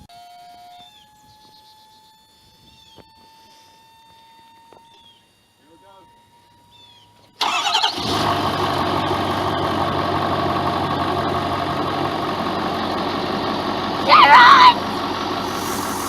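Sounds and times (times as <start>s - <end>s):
engine starting and idling: 7.4s - 14.0s.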